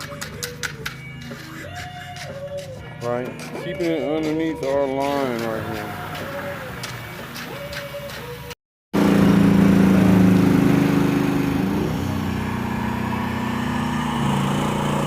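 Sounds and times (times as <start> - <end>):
motor engine running: 9.0 - 15.0.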